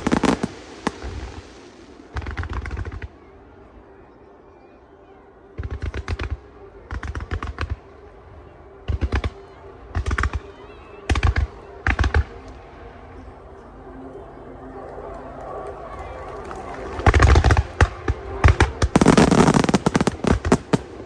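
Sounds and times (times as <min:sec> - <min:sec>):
fireworks cracking and booming: 0:00.0 - 0:03.2, 0:05.6 - 0:07.8, 0:08.9 - 0:10.4, 0:16.9 - 0:21.0.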